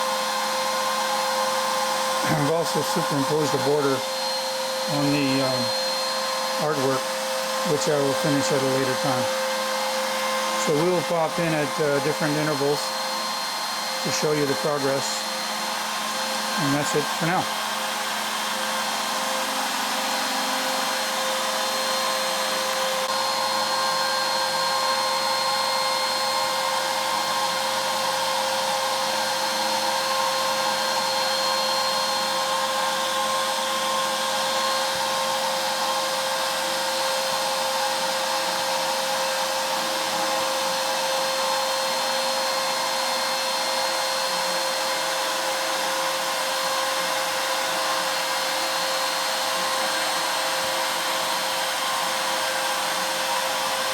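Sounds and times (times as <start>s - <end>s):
router spindle high whine: 0.0s - 53.9s.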